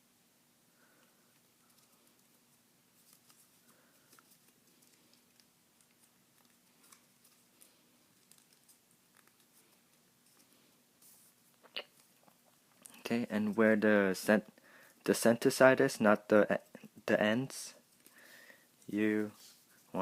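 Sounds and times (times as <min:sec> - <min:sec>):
faint steady hum: 0:00.0 - 0:20.0
paper being folded and creased: 0:03.0 - 0:11.4.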